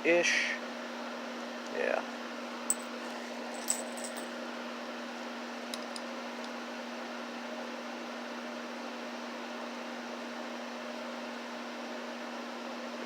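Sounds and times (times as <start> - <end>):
steady low hum and hiss: 0.0 - 7.7
metal cartridges and calipers clicking: 3.6 - 4.2.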